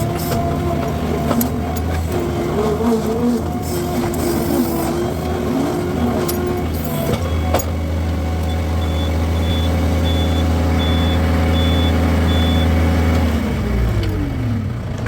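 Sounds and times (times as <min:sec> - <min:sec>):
skid steer engine running: 0:00.0 - 0:15.0
reversing alarm beeps: 0:08.4 - 0:12.8.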